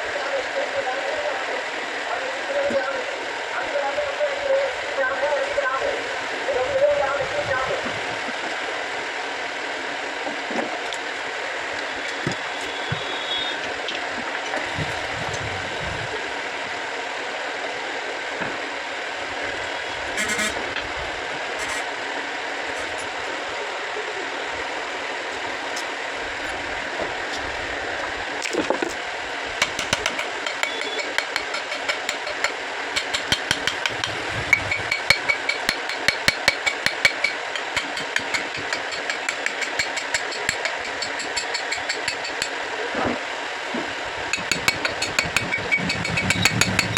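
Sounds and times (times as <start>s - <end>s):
water pump motor whirring: 25.4s - 42.4s
rapid clicking and rattling: 29.6s - 42.5s, 44.4s - 46.9s.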